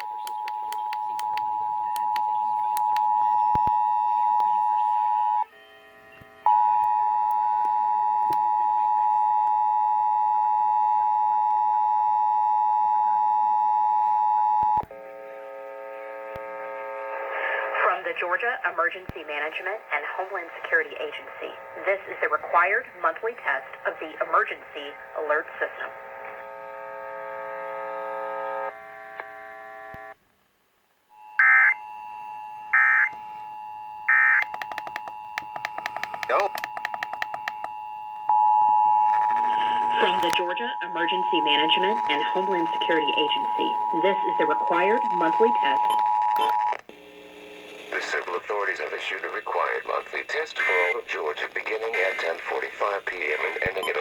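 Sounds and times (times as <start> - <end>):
two-tone alarm: 0.0 - 15.0, 31.1 - 46.8
two-tone attention signal: 34.0 - 46.7
alert data tone bursts: 34.1 - 37.6, 38.3 - 46.6
rapid clicking: 34.4 - 37.6.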